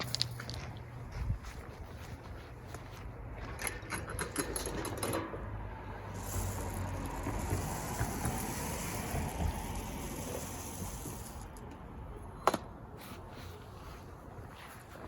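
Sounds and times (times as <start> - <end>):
seed rattling into bird feeder: 6.2 - 9.0.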